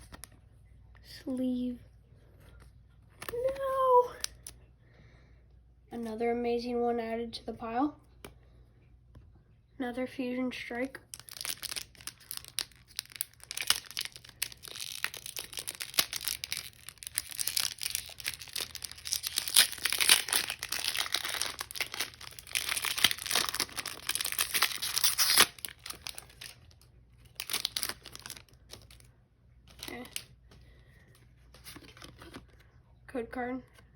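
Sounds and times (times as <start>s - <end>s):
foil wrapper tearing and crinkling: 10.7s - 29.1s, 29.7s - 30.3s, 31.6s - 32.5s.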